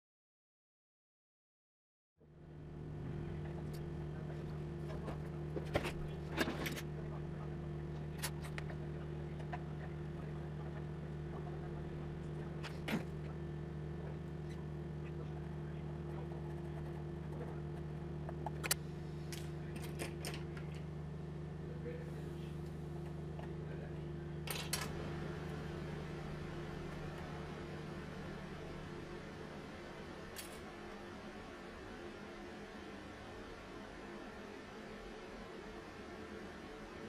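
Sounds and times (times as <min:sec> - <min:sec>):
low hum with fixed tones: 0:02.2 - 0:37.0.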